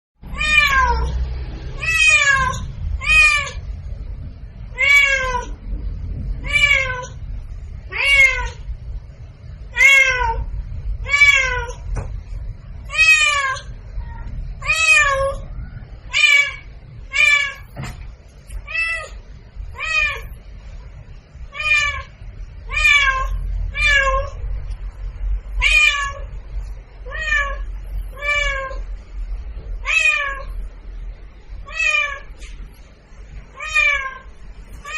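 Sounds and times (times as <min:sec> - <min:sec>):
low steady rumble: 0:00.2 - 0:34.9
cat meowing: 0:00.3 - 0:01.2, 0:01.8 - 0:03.7, 0:04.7 - 0:05.6, 0:06.4 - 0:07.2, 0:07.9 - 0:08.7, 0:09.7 - 0:11.9, 0:12.9 - 0:17.8, 0:18.6 - 0:20.4, 0:21.5 - 0:24.4, 0:25.6 - 0:26.4, 0:27.0 - 0:28.9, 0:29.8 - 0:30.6, 0:31.7 - 0:32.3, 0:33.5 - 0:34.9.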